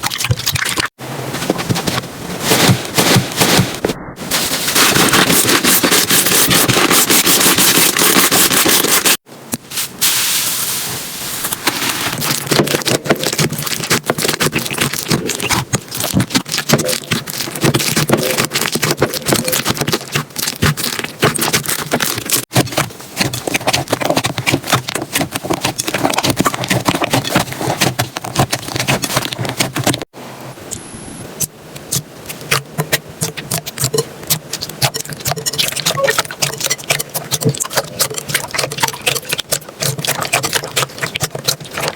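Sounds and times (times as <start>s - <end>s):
slime crackling and popping: 11.6s - 30.0s, 31.4s - 41.9s.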